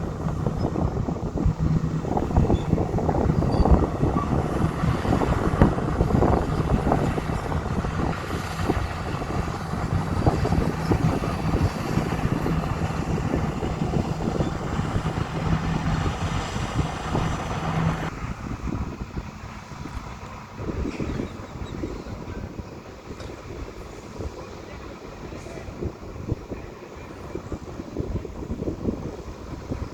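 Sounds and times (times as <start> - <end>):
steady low hum: 0.0 - 18.7
diesel engine of earthmoving equipment: 0.0 - 29.9.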